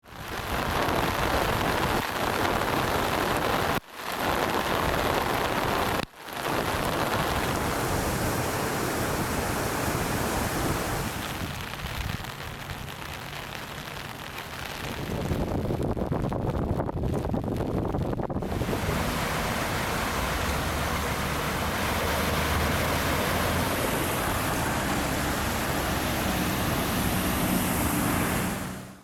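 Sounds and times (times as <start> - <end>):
heavy rain: 0.0 - 29.0
wind on microphone: 4.4 - 12.3, 14.7 - 21.1.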